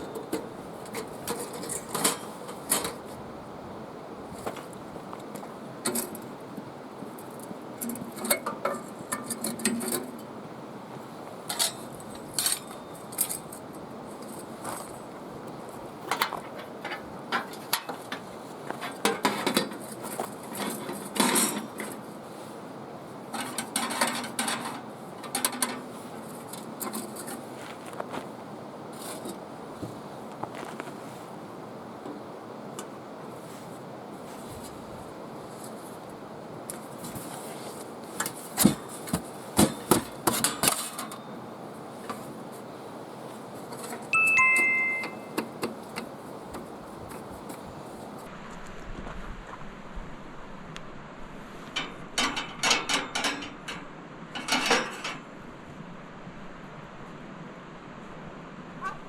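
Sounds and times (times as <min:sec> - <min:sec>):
metal table clinking and scraping: 0:00.1 - 0:03.0, 0:18.8 - 0:22.0, 0:23.4 - 0:25.9, 0:43.8 - 0:45.6, 0:51.8 - 0:55.2.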